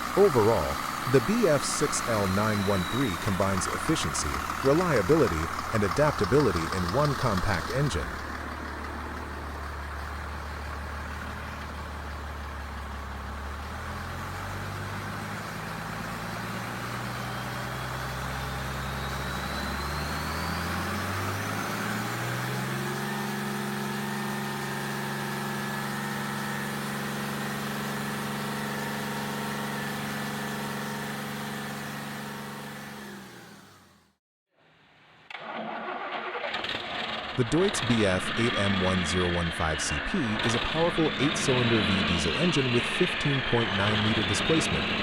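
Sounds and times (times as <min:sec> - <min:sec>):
faint high whine: 0:00.0 - 0:08.0
diesel engine revving up: 0:00.0 - 0:34.2, 0:35.4 - 0:45.0.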